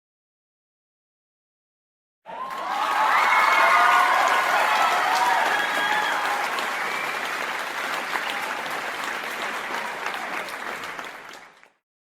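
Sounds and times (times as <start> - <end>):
crowd applauding: 2.3 - 11.8.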